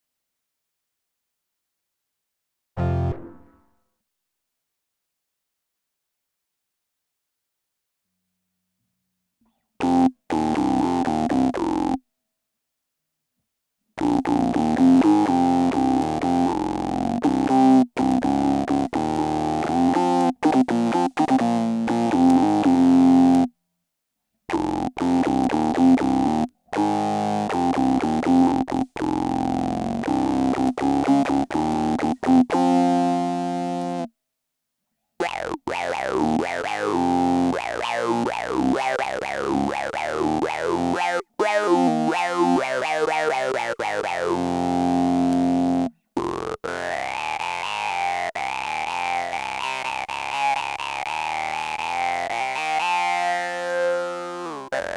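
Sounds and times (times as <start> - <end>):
synth-like electric bass riffs: 14.0 - 23.4, 24.5 - 33.7.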